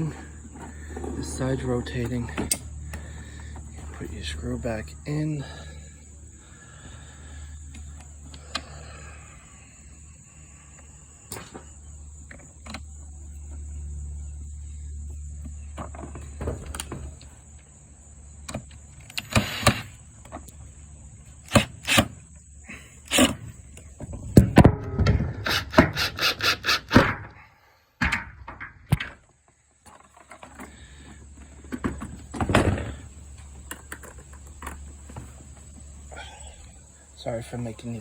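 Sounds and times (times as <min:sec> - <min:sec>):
low hum with high whine: 0:00.0 - 0:25.4.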